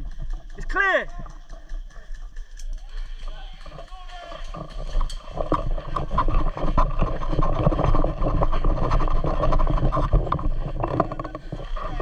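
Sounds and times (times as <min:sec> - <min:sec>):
clothing rustling on microphone: 0:03.7 - 0:12.0.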